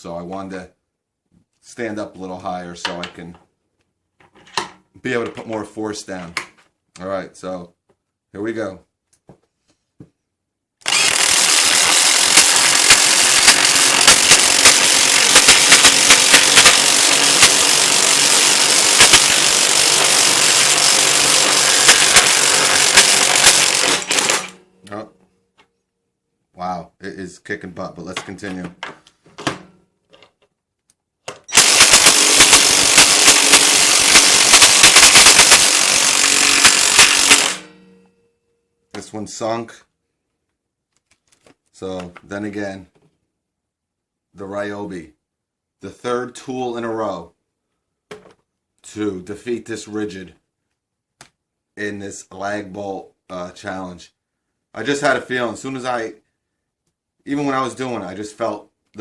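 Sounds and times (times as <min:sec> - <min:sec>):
impact wrench hammering: 0:10.8 - 0:24.6, 0:31.5 - 0:37.9.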